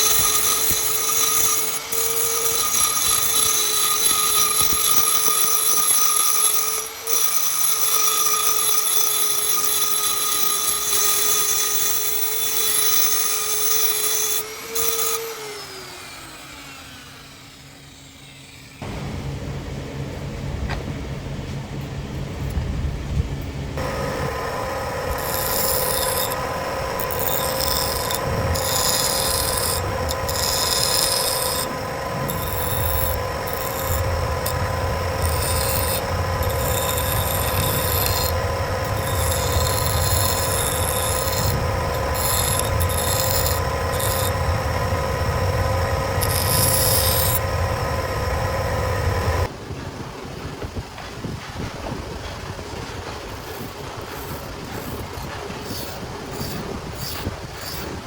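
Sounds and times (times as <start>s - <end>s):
electric grinder grinding steel: 0.0s - 19.0s, 23.8s - 49.5s.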